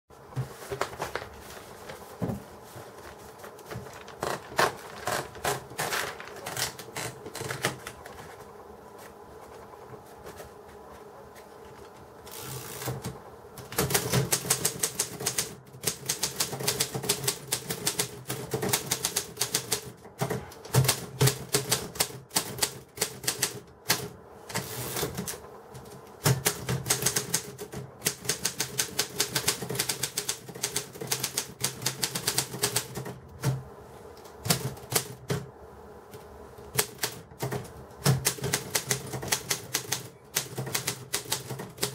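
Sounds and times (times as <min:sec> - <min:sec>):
typewriter typing: 0:03.4 - 0:08.1, 0:12.3 - 0:33.6, 0:34.3 - 0:35.5, 0:36.7 - 0:41.9.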